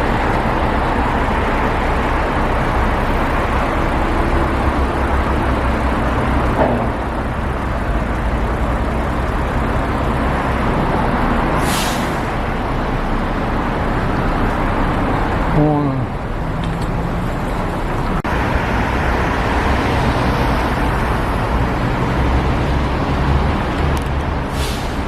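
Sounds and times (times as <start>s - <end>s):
air hiss: 11.6s - 12.3s.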